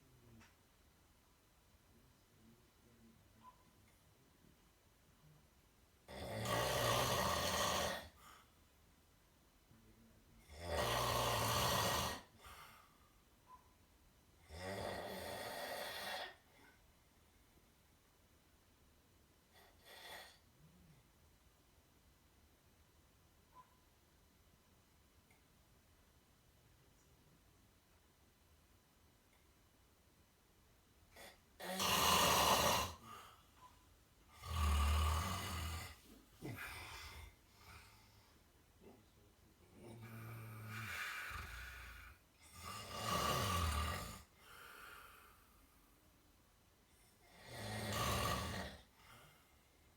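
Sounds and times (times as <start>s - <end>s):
person snoring: 6.1s - 8.2s, 10.5s - 12.4s, 31.2s - 33.3s, 34.3s - 38.0s, 39.7s - 45.1s, 47.3s - 48.9s
soft breathing: 32.9s - 42.6s, 44.2s - 46.1s.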